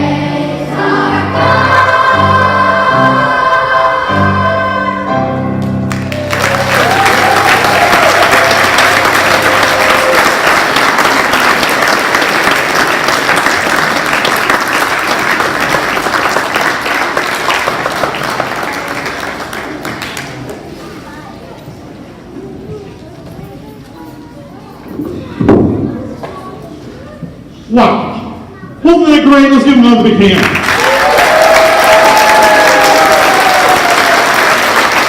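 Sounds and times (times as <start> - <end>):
children's choir singing: 0.0 - 5.6
musical accompaniment: 0.0 - 7.4
audience applause: 5.9 - 20.7, 30.3 - 35.0.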